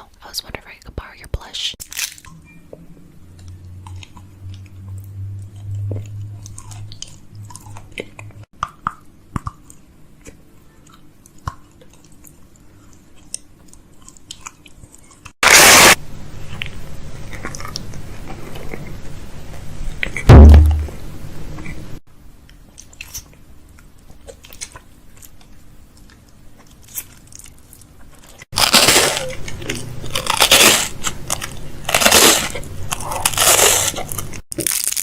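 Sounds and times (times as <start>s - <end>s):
packaging crinkling: 1.8s - 2.4s, 26.6s - 35.0s
heavy thud: 20.3s - 21.0s.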